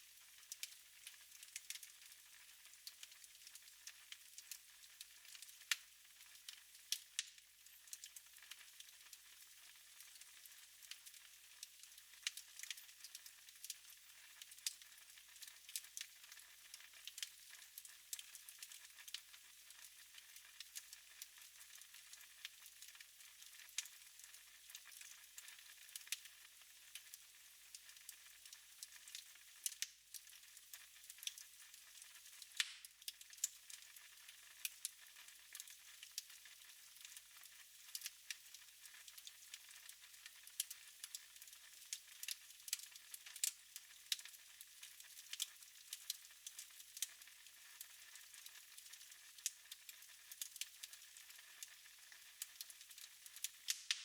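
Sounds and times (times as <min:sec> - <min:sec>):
wood fire crackling: 0:00.4 - 0:02.1, 0:02.8 - 0:04.6, 0:05.2 - 0:09.1, 0:10.0 - 0:26.2, 0:28.8 - 0:54.0.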